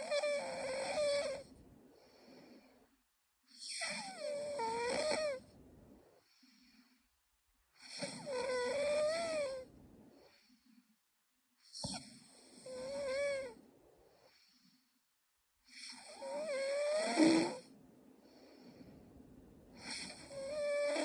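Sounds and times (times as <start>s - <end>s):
woman snoring: 0.0s - 2.8s, 3.5s - 5.4s, 7.8s - 10.4s, 11.8s - 14.7s, 15.7s - 17.7s, 19.8s - 21.0s
soft breaths: 0.0s - 21.0s.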